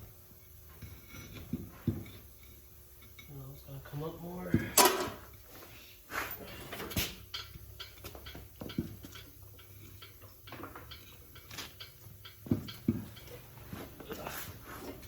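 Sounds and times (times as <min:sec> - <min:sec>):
tools clicking and knocking: 0:06.8 - 0:13.8.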